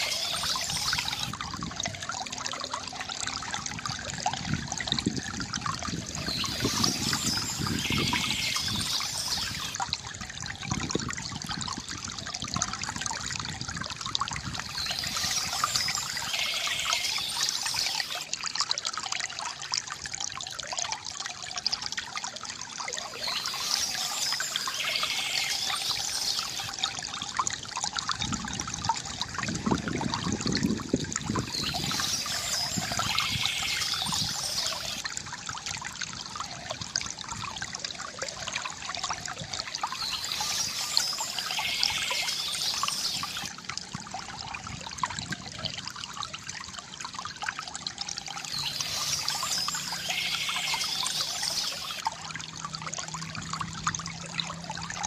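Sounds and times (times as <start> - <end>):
water trickling from fountain spout: 0.0 - 55.0
bird chirping: 6.2 - 9.8, 14.7 - 18.2, 23.1 - 26.7, 31.4 - 35.0, 40.0 - 43.5, 48.5 - 52.0.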